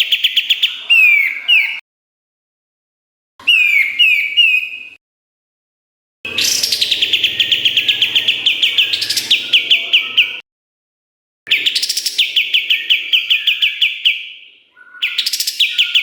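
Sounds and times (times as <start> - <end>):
bird singing trills: 0.0 - 1.8, 3.4 - 5.0, 6.3 - 10.4, 11.5 - 16.0.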